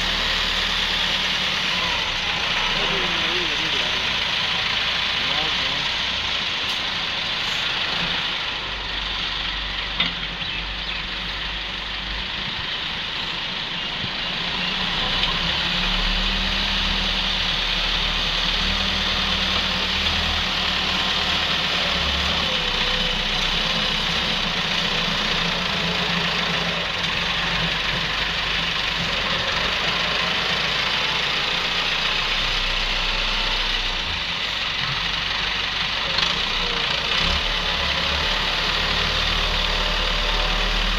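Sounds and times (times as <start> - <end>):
wheel loader diesel engine running: 0.0 - 40.9.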